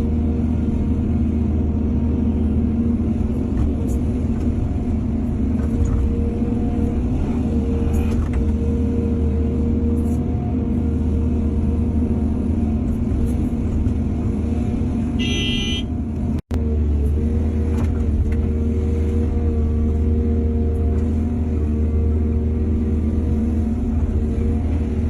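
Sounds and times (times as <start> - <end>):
diesel machinery droning: 0.0 - 25.0.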